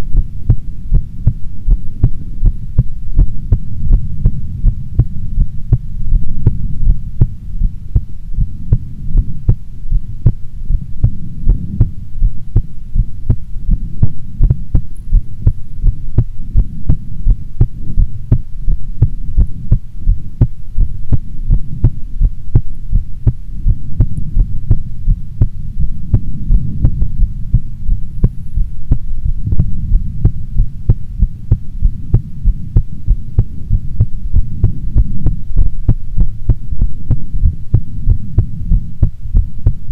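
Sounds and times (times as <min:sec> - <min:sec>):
heartbeat thuds: 0:00.0 - 0:39.9
low hum: 0:00.0 - 0:39.9.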